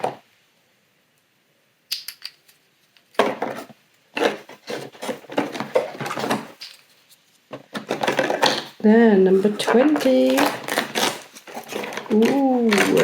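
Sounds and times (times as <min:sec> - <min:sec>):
cardboard and plastic handling: 0:03.2 - 0:13.0
rubbing and scraping: 0:03.2 - 0:13.0.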